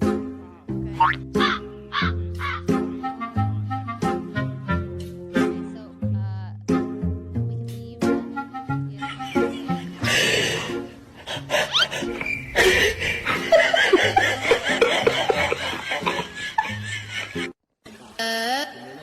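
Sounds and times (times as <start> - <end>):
background music: 0.0 - 17.6
people laughing: 9.0 - 10.7, 11.3 - 17.6.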